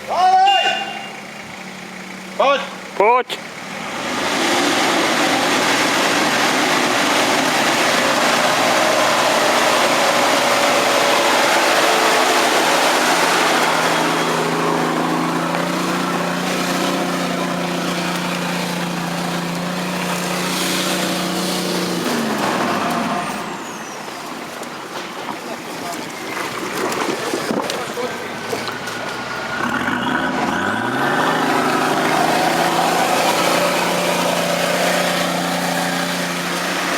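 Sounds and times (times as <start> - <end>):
diesel engine revving: 0.8 - 25.0, 25.6 - 36.9.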